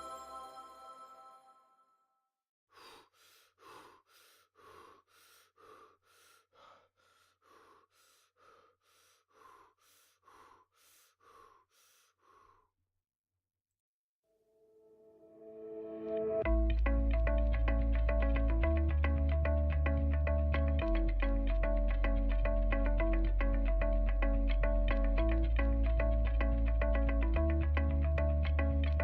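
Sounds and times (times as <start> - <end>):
low steady hum: 16.4 - 29.0.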